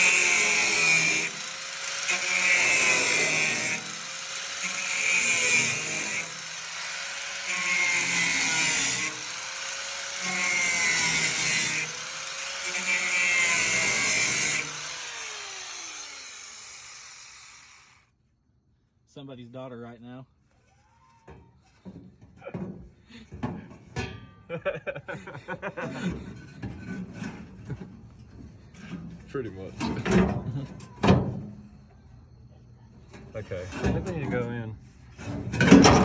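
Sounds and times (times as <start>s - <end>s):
power tool working metal: 0.0s - 18.0s, 35.3s - 36.0s
motor winding down: 8.8s - 18.0s.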